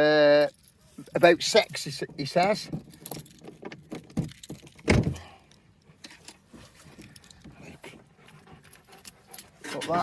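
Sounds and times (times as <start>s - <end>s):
light clicks and rattles: 0.3s - 10.0s
heavy thunk: 4.8s - 5.2s.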